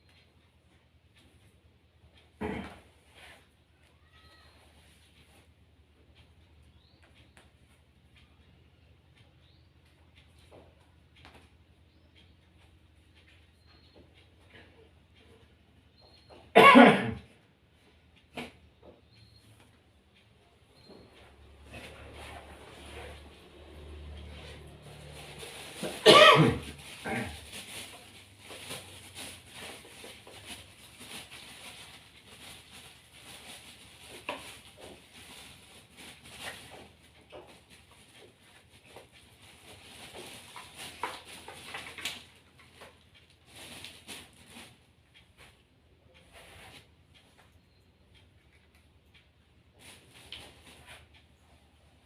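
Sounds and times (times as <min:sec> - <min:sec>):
person coughing: 0:02.4 - 0:02.8, 0:16.6 - 0:17.3, 0:25.8 - 0:27.3
faint rustling: 0:17.9 - 0:47.6.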